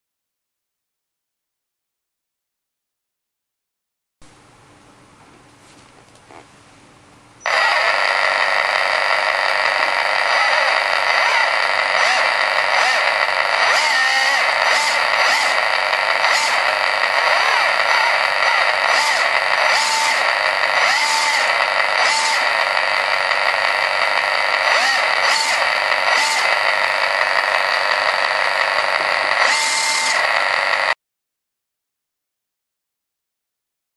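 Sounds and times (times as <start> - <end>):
simulated engine through small speaker: 7.5 - 31.0.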